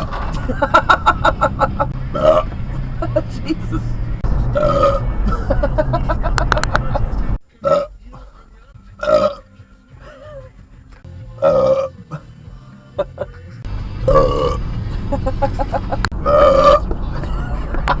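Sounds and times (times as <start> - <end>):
car rumble: 0.0 - 18.0
person belching: 2.1 - 2.5, 4.5 - 5.2, 7.6 - 8.0, 9.0 - 9.4, 11.4 - 12.0, 14.0 - 14.6, 16.2 - 16.9.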